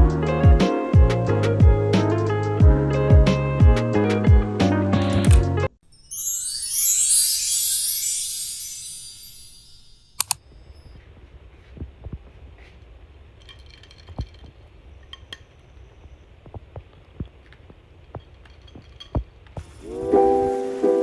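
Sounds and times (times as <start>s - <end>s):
sharp clicks: 5.0s - 5.4s, 10.2s - 10.4s
small objects tapping and clinking: 13.4s - 15.5s, 18.2s - 19.2s.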